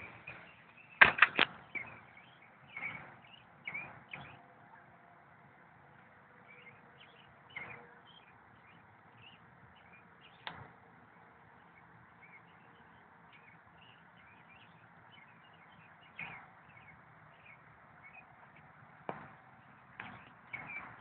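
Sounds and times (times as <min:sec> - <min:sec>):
distant birds chirping: 0:00.0 - 0:21.0
sharp knocks: 0:01.0 - 0:01.6, 0:19.1 - 0:20.8.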